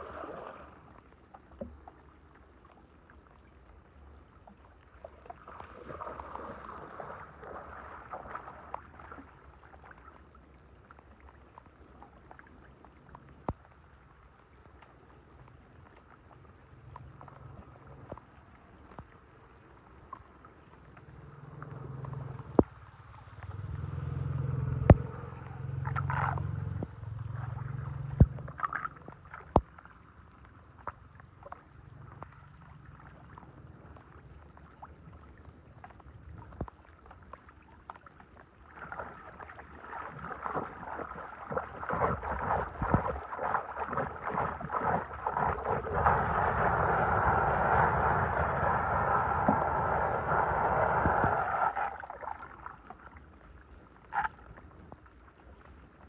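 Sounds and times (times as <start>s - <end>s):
water gurgling and splashing: 0.0s - 56.0s
low rumbling: 21.1s - 29.2s.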